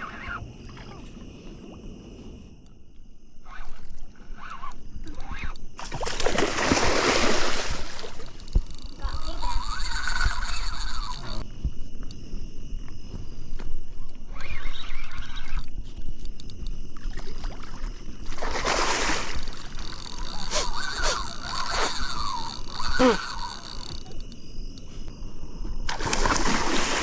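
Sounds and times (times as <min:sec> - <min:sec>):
night insects droning: 0:00.0 - 0:27.0
fish thrashing and splashing: 0:05.8 - 0:10.4.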